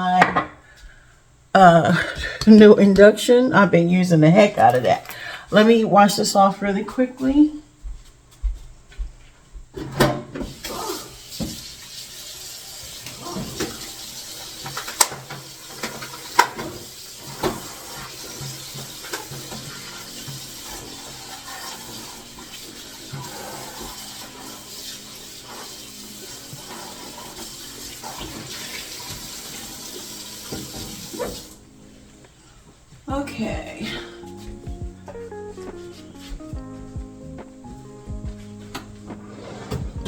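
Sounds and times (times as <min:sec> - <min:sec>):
faucet running into sink: 0:10.4 - 0:31.6.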